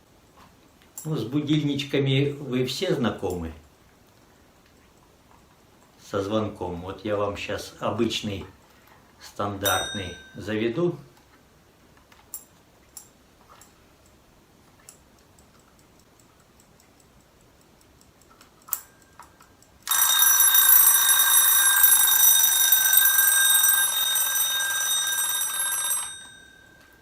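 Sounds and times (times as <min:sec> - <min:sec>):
alarm clock bell ringing: 0:09.6 - 0:10.4, 0:19.8 - 0:27.0
faint clock clicks: 0:12.0 - 0:19.9.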